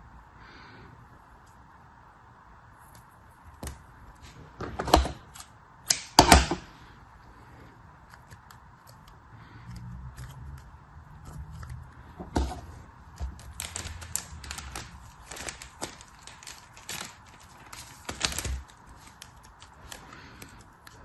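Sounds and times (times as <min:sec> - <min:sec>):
packaging clacks and rustling: 0:11.5 - 0:21.0.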